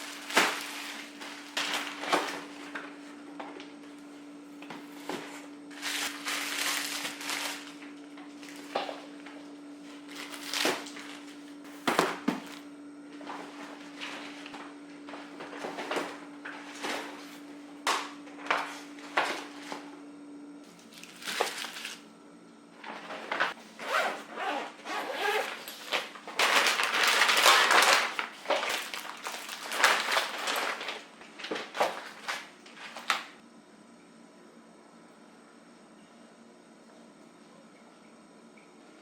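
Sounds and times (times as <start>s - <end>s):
packaging rustling: 0.0s - 3.0s, 4.9s - 9.2s, 10.0s - 12.6s, 20.8s - 22.1s, 22.8s - 33.4s
faint steady hum: 0.0s - 39.0s.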